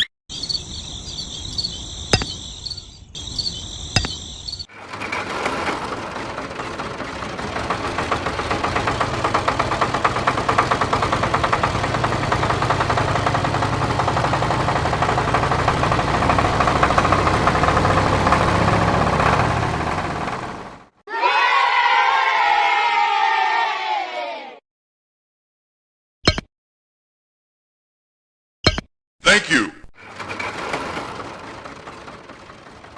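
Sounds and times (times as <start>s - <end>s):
engine running with knocking pulse: 0.4s - 21.0s, 30.0s - 32.9s.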